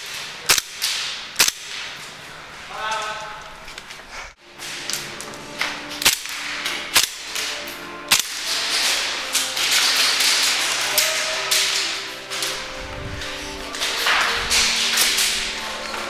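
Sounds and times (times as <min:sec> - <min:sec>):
steady rushing noise: 0:12.1 - 0:16.0.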